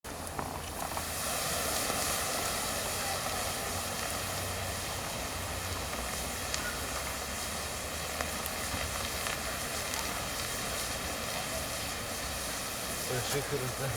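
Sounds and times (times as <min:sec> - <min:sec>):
bonfire rushing: 0:00.1 - 0:13.9
fire crackles: 0:00.1 - 0:13.9.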